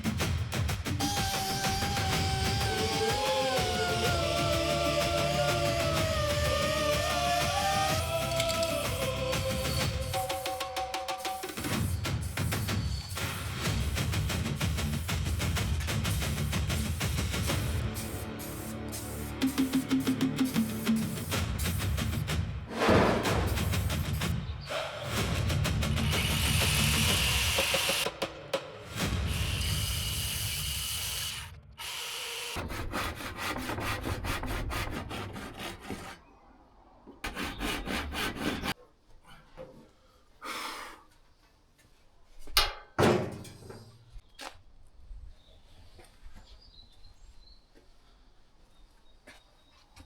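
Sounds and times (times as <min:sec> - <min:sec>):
sharp knocks: 0:22.7 - 0:24.0
power tool on metal: 0:25.8 - 0:28.1, 0:29.0 - 0:33.0.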